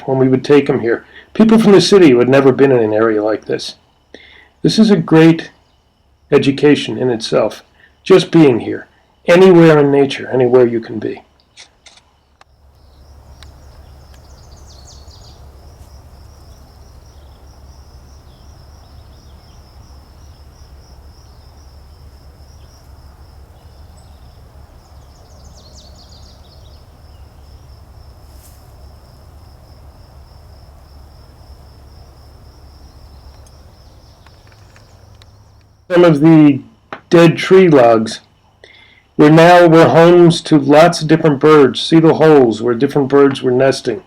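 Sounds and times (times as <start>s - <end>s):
insect trilling: 0.0s - 42.8s
chirps: 3.3s - 27.8s, 32.8s - 36.1s.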